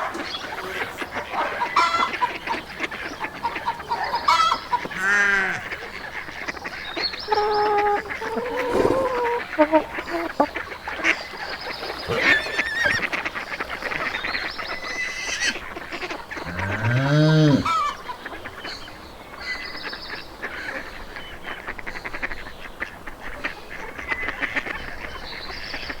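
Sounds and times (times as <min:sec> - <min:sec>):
geese and ducks honking and quacking: 0:00.0 - 0:26.0
long low bird call: 0:00.2 - 0:15.1, 0:16.3 - 0:18.1.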